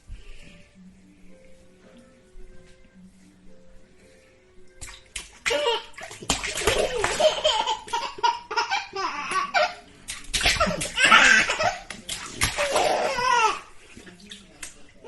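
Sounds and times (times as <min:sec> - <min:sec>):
water splashing in a sink: 0:04.8 - 0:08.1, 0:09.4 - 0:15.0
baby laughing: 0:05.5 - 0:13.6.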